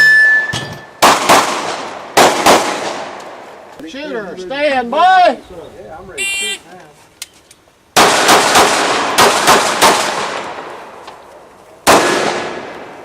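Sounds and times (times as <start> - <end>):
pistol shots echoing: 1.0 - 3.2, 8.0 - 10.8, 11.8 - 13.0.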